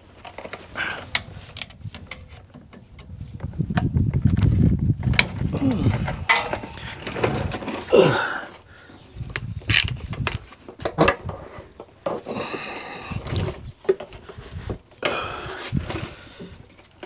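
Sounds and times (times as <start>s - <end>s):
hand tools on metal: 5.6s - 8.6s.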